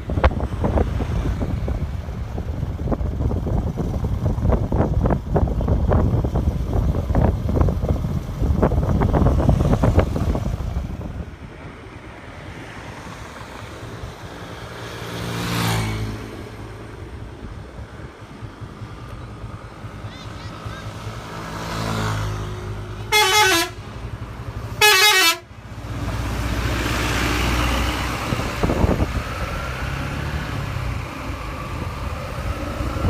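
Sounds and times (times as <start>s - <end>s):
vehicle passing: 0.0s - 5.2s, 7.1s - 33.0s
wind buffeting the microphone: 0.0s - 14.7s, 26.8s - 33.0s
road traffic noise: 0.0s - 33.0s.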